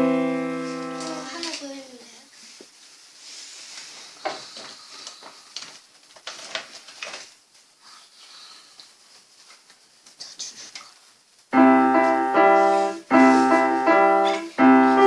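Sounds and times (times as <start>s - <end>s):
faint rustling and handling noise: 0.4s - 15.0s.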